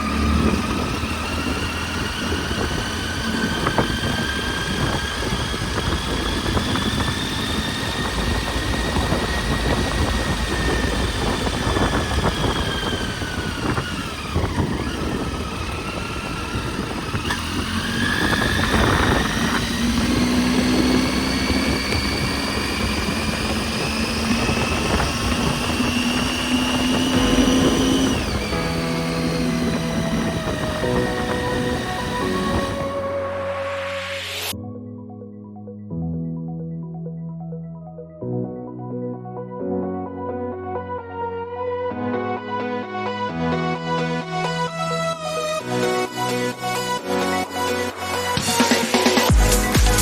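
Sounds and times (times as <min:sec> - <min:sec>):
wind noise: 0:00.0 - 0:33.9
motorcycle engine running: 0:00.0 - 0:34.5.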